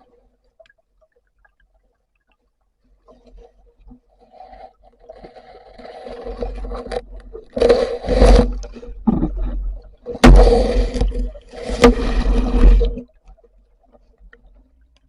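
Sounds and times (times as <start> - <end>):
muffled water splashing and scraping: 0.0 - 15.0.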